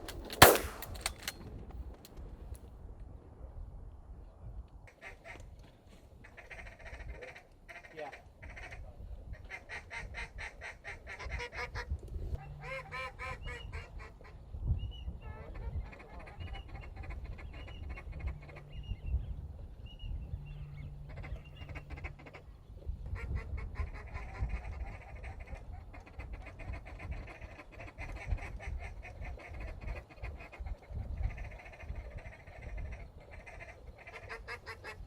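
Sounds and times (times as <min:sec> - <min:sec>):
ducks quacking: 0:23.2 - 0:35.0.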